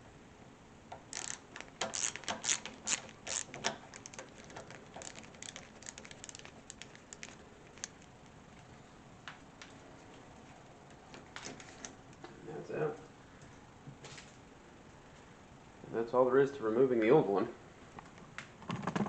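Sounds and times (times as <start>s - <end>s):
screwdriver metallic clicks: 1.1s - 5.6s.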